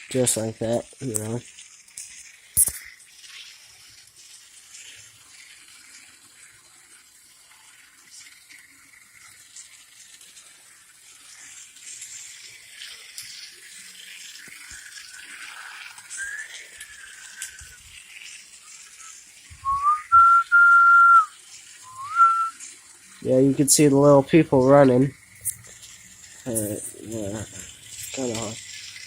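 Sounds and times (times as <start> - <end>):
whistle-like tone: 16.1 - 17.8, 18.6 - 22.6.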